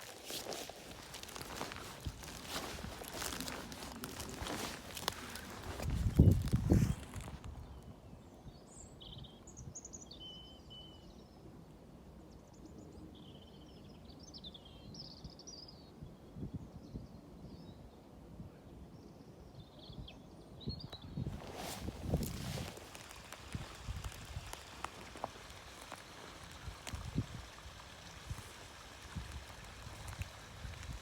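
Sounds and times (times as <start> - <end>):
small birds chirping: 0.1 - 11.1.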